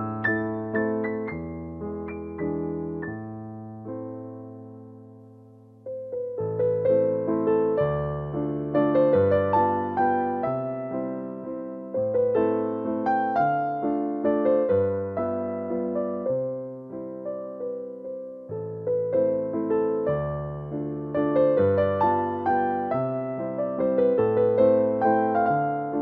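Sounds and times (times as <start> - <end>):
electric piano melody with bass: 0.0 - 26.0.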